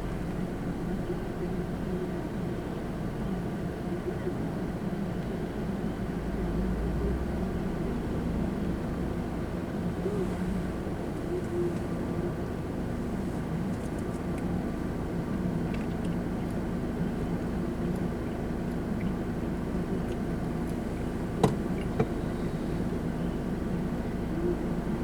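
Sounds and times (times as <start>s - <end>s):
car engine and road noise: 0.0s - 25.0s.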